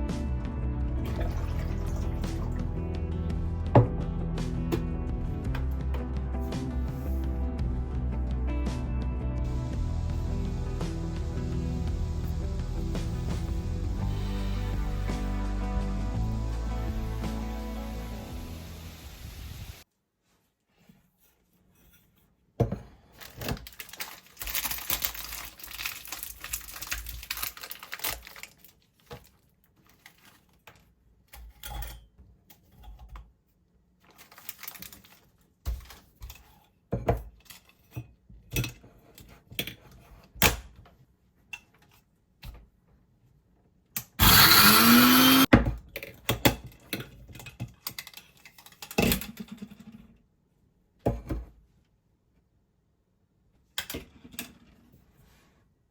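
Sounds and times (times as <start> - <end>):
electric blender running: 9.5 - 19.8, 44.2 - 45.5.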